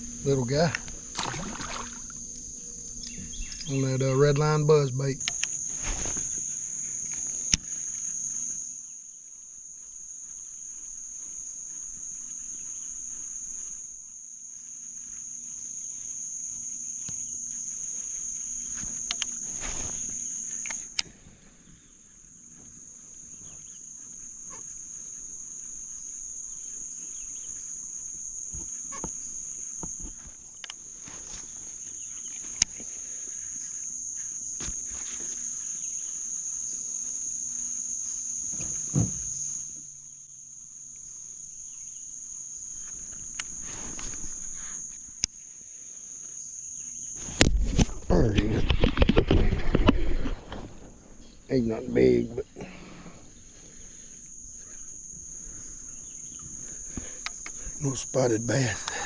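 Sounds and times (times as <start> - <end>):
high-pitched insect chorus: 0.0 - 59.0.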